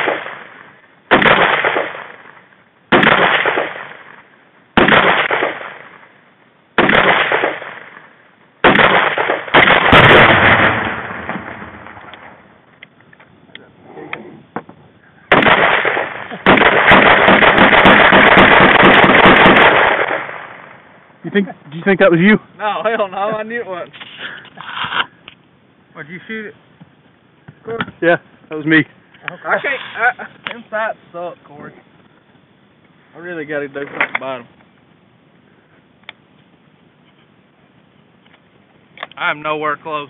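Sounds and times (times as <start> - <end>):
loud explosive blast: 0.0 - 2.3, 2.9 - 4.2, 4.8 - 6.0, 6.8 - 8.0, 8.6 - 12.5, 15.3 - 20.8
gunshots with echo: 0.0 - 4.2, 4.8 - 6.0, 6.8 - 8.0, 8.6 - 12.4, 15.3 - 20.8.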